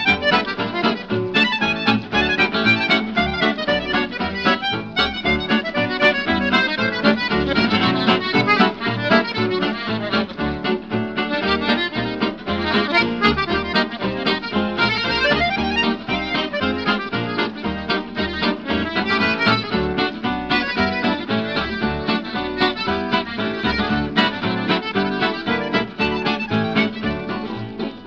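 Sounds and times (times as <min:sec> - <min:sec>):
accordion background music: 0:00.0 - 0:28.0.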